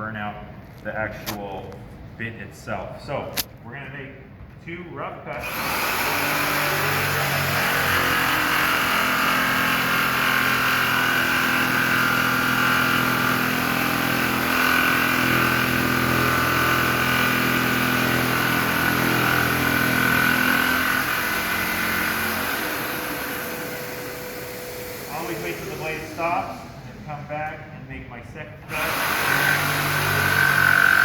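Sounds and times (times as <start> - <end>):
electric jigsaw cutting: 5.4 - 25.9, 28.7 - 31.0.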